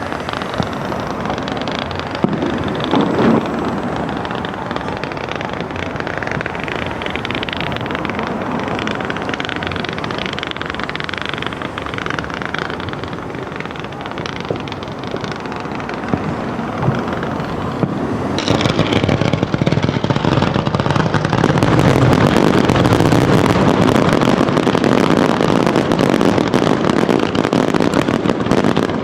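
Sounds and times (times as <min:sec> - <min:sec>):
fireworks crackling and popping: 0:00.0 - 0:29.0
loud firework bangs: 0:00.0 - 0:29.0.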